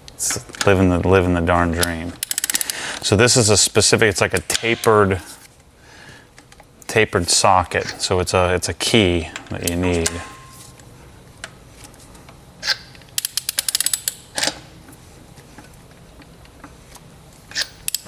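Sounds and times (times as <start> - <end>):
hand ratchet clicking: 1.8 - 2.9, 12.6 - 14.6, 17.5 - 18.0.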